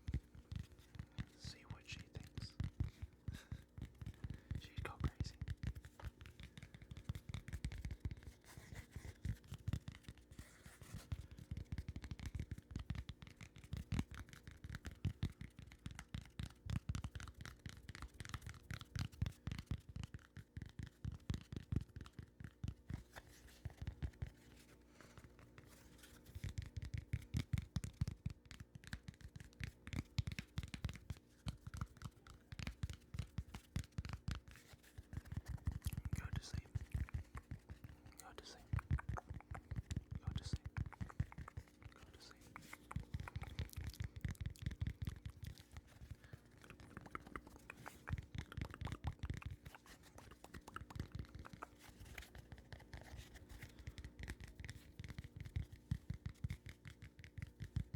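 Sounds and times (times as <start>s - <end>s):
scratching and tapping on microphone: 0.0s - 57.9s.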